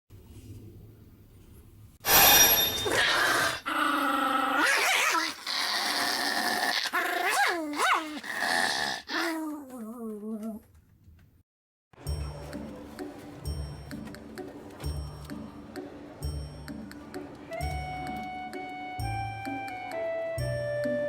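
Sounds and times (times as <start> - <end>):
animal crying calls: 2.9 - 10.6.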